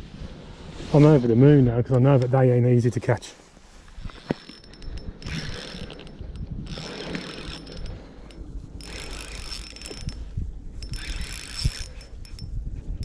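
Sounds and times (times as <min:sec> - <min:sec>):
fishing reel gears whirring: 0:04.0 - 0:12.6.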